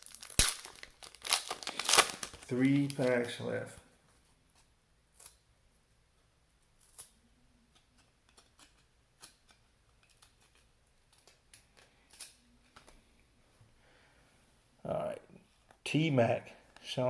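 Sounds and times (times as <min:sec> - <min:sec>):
wrapper crinkling: 0:00.0 - 0:03.5.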